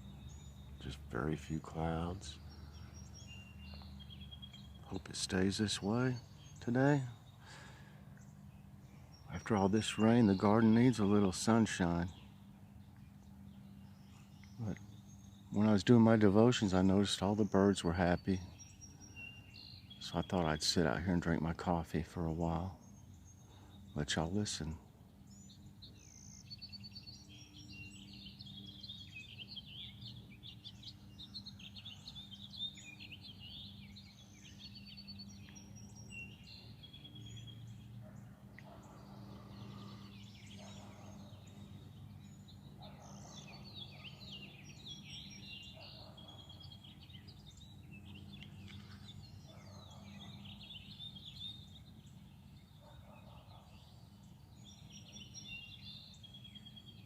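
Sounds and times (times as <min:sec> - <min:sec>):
low rough bird call: 0:00.0 - 0:12.3, 0:27.9 - 0:51.9
steady low hum: 0:00.0 - 0:21.1, 0:22.2 - 0:43.9
songbirds chirping and singing: 0:00.0 - 0:57.0.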